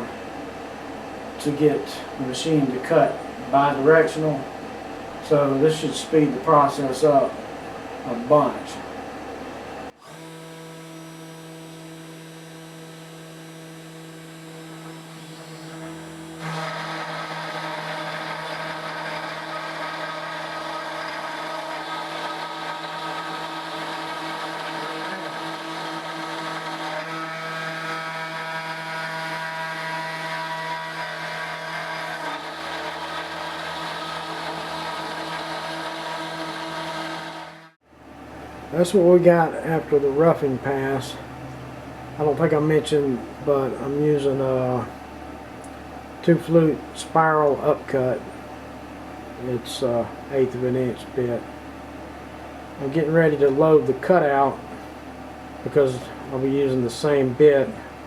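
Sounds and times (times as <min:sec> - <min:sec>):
cnc spindle whining: 0:10.0 - 0:37.8
router bit cutting wood: 0:10.0 - 0:37.8.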